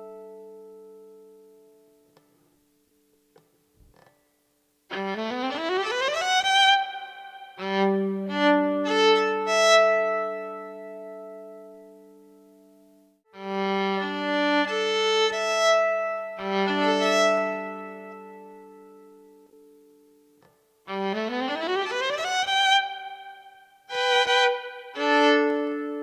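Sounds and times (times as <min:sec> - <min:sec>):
electric violin phrases: 0:04.9 - 0:12.4, 0:13.3 - 0:19.6, 0:20.9 - 0:26.0.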